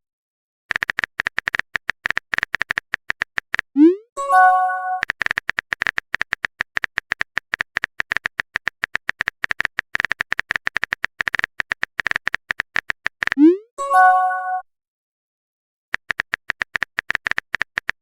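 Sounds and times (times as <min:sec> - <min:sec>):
sharp electronic clicks: 0:00.7 - 0:03.9, 0:05.0 - 0:13.6, 0:15.9 - 0:18.0
chime-like tone: 0:13.8 - 0:14.6.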